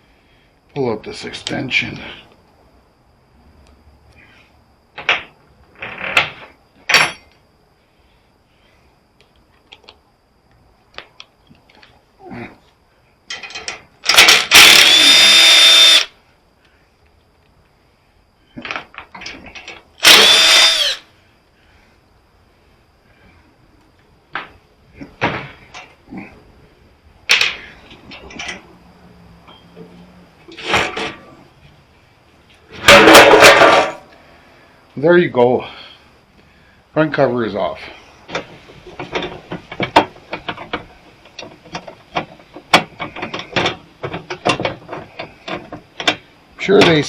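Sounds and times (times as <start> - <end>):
metal parts scraping and clattering: 13.3 - 14.6, 30.5 - 31.2, 32.8 - 34.0.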